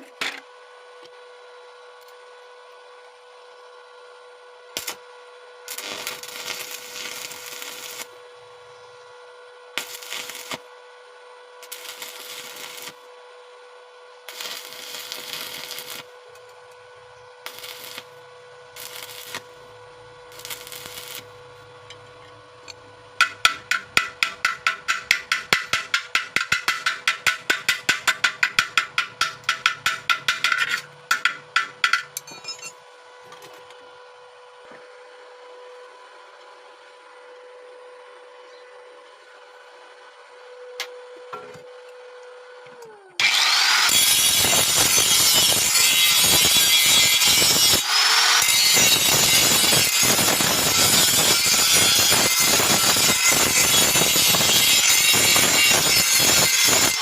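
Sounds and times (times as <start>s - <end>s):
crackling arc welding: 4.7s - 8.2s, 9.8s - 11.0s, 11.6s - 13.1s, 14.2s - 16.6s, 17.4s - 21.4s, 23.2s - 32.6s, 43.2s - 57.0s.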